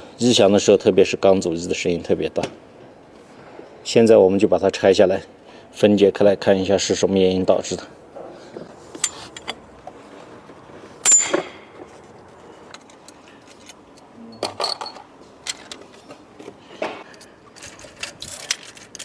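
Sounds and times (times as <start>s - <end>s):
metal tools clinking: 8.9s - 9.6s, 11.0s - 16.1s.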